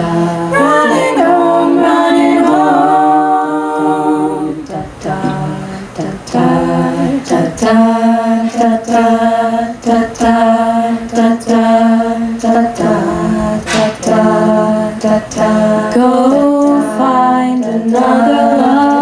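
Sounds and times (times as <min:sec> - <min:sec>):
vocal group singing in harmony: 0:00.0 - 0:19.0.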